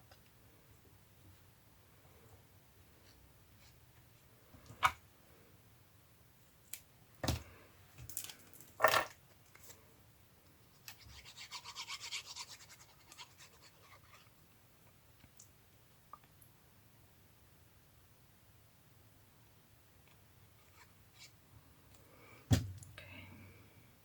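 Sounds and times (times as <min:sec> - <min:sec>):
paper rubbing and scratching: 0:11.0 - 0:14.3.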